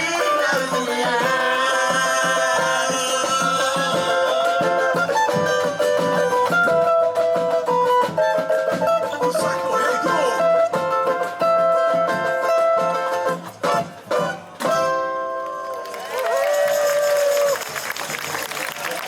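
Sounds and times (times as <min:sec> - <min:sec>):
samba percussion beat: 0:00.0 - 0:15.1
plucked strings melody: 0:00.0 - 0:15.8.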